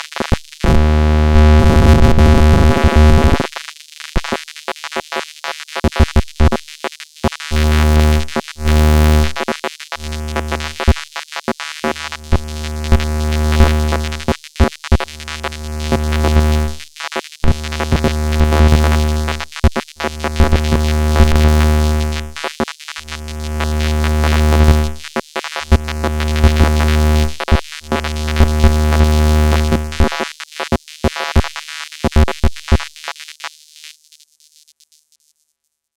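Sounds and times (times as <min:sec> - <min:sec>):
rapid electronic clicks and blips: 0:00.0 - 0:03.5, 0:11.8 - 0:16.7, 0:17.5 - 0:30.3
low buzzing electronic drone: 0:00.6 - 0:03.4, 0:15.2 - 0:16.8, 0:17.5 - 0:22.4, 0:23.1 - 0:25.0, 0:25.7 - 0:30.1.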